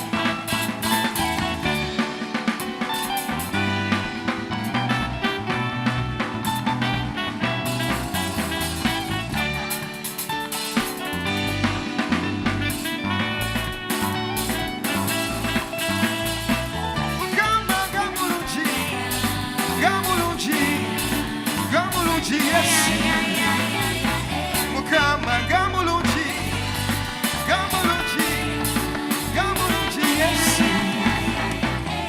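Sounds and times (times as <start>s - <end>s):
live band playing upbeat song: 0.0s - 32.0s
person singing: 15.9s - 32.0s.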